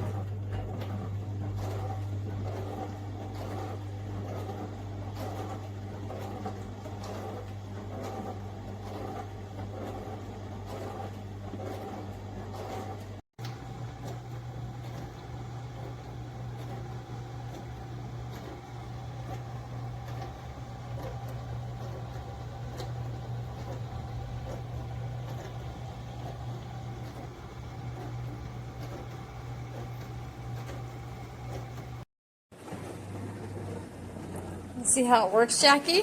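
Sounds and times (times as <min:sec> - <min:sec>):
dishwasher pump hum: 0:00.0 - 0:35.7.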